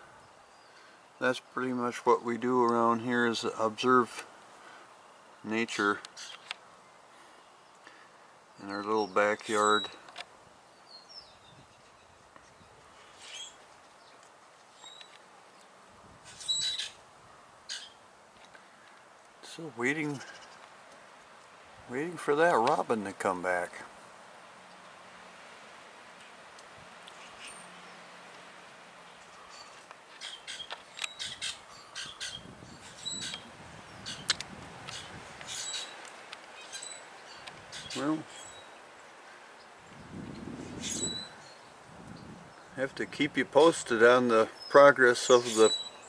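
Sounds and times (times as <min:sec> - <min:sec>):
songbird chirping: 0:00.0 - 0:46.0
harsh bird calls: 0:04.6 - 0:10.1, 0:10.7 - 0:15.7, 0:16.3 - 0:17.0, 0:17.6 - 0:18.0, 0:18.6 - 0:20.8, 0:27.1 - 0:28.0, 0:29.0 - 0:46.0
high thin bird chirps: 0:06.1 - 0:06.5, 0:09.5 - 0:10.0, 0:10.8 - 0:17.0, 0:17.7 - 0:18.0, 0:27.1 - 0:27.7, 0:29.2 - 0:39.0, 0:39.6 - 0:42.8, 0:45.4 - 0:46.0.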